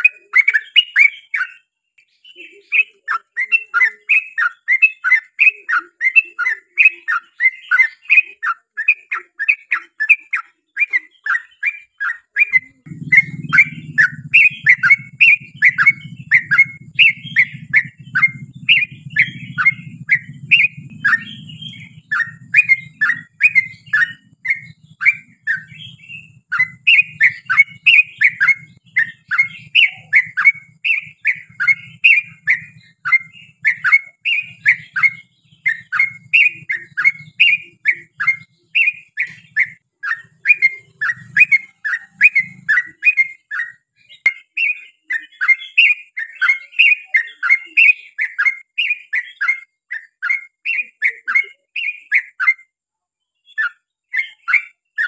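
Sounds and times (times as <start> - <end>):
bird chirping: 0.0 - 55.0
low rumble: 12.9 - 26.9.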